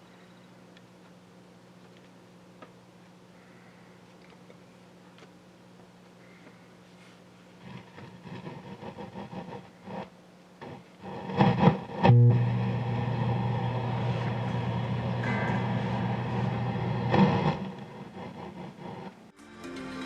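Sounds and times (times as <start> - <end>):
distorted electric guitar: 7.6 - 20.0.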